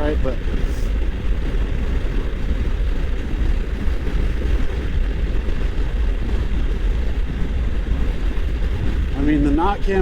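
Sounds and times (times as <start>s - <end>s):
wind rush: 0.0s - 10.0s.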